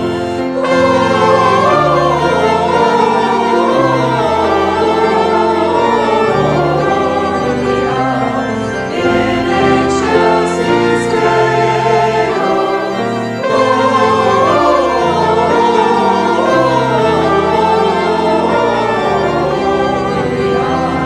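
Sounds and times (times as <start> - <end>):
choir singing a hymn: 0.0 - 21.0
organ accompaniment: 0.0 - 21.0.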